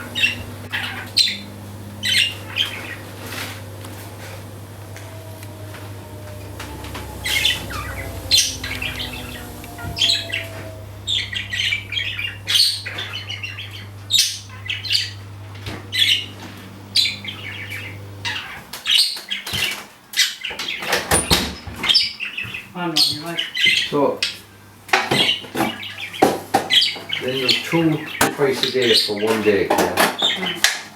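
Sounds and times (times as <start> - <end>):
budgerigar chirping: 0.0 - 3.5, 4.8 - 15.3, 15.9 - 16.4, 17.0 - 24.4, 25.1 - 30.7
low steady hum: 0.0 - 18.6.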